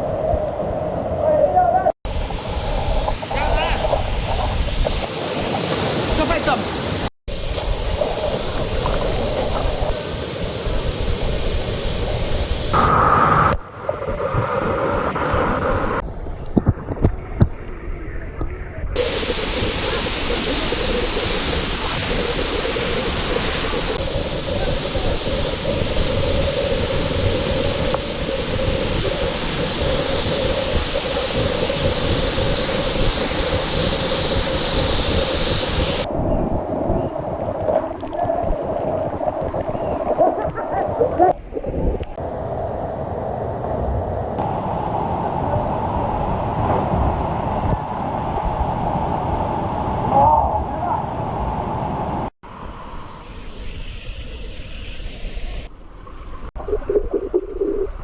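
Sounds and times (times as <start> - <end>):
waterfall roaring: 2.1 - 13.5, 19.0 - 36.1.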